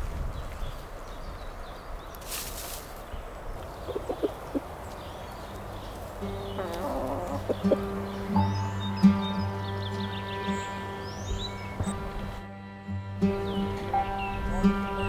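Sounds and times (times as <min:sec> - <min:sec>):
short bird calls: 0:00.6 - 0:12.4
music: 0:06.2 - 0:15.0.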